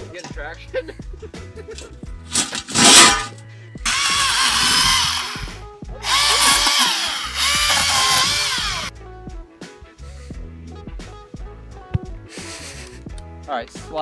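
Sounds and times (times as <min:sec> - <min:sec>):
music: 0:00.0 - 0:14.0
electric motor whining: 0:02.3 - 0:03.3, 0:03.9 - 0:08.9.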